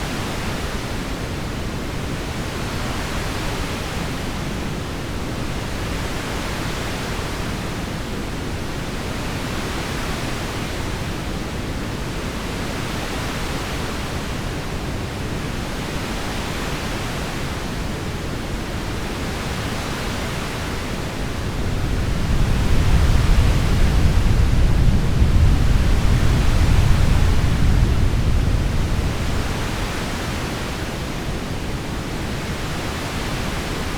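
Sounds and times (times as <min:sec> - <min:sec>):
soft thunder rumble: 0:22.4 - 0:29.7.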